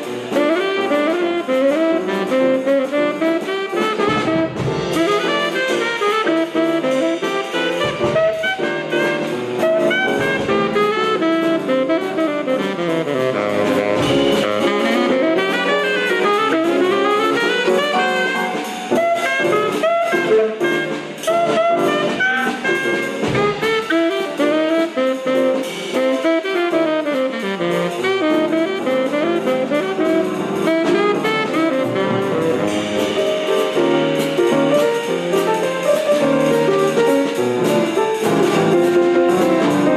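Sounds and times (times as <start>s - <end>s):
drum kit: 0.0s - 39.9s
jazz horn ensemble: 0.0s - 39.9s.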